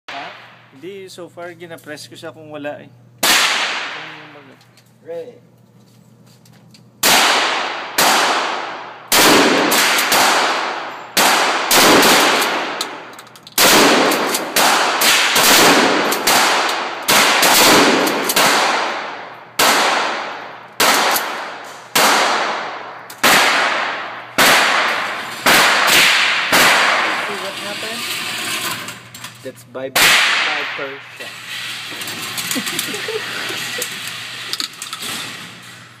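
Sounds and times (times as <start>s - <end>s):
shotgun shots: 3.2s - 4.2s, 7.0s - 27.3s, 30.0s - 31.0s.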